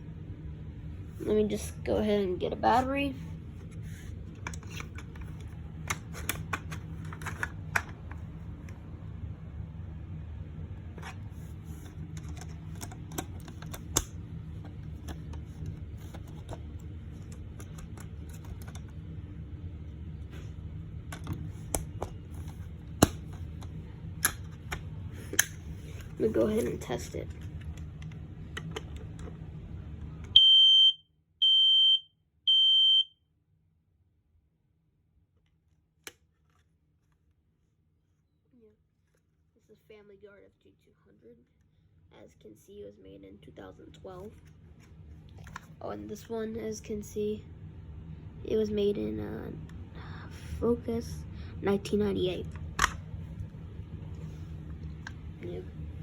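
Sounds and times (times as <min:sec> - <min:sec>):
steady low hum: 0:00.0 - 0:32.0, 0:37.0 - 0:56.0
smoke alarm beeps: 0:30.4 - 0:33.2.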